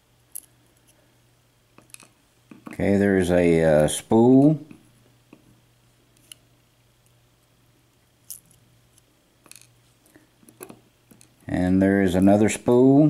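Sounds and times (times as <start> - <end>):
low steady hum: 0.0 - 13.0
small metal pins clicking: 1.8 - 2.8, 9.4 - 9.7.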